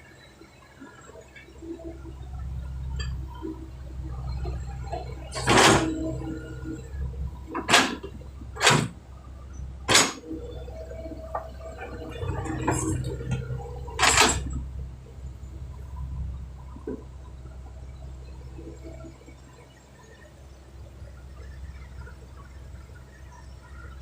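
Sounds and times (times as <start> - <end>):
diesel engine running: 1.6 - 19.5.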